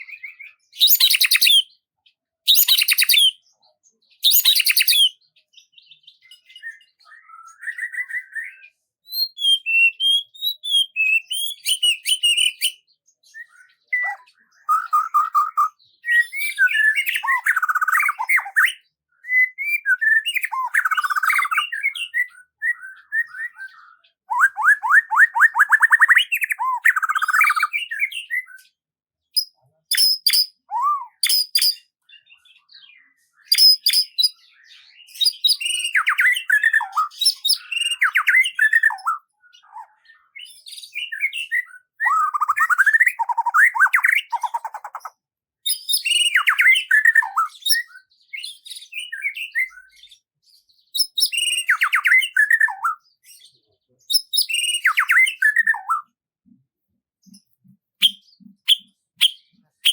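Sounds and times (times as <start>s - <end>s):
songbird singing: 0.0s - 56.6s, 57.2s - 59.9s.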